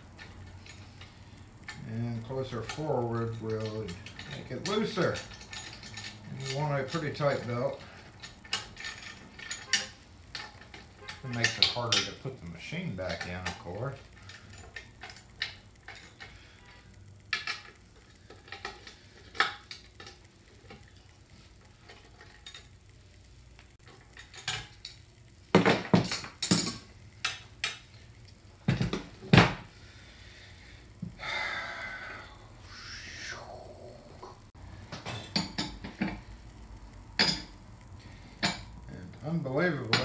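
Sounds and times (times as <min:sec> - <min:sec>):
metal tools clinking and knocking: 0:01.7 - 0:12.3, 0:13.0 - 0:16.3, 0:23.8 - 0:25.0, 0:25.6 - 0:27.8.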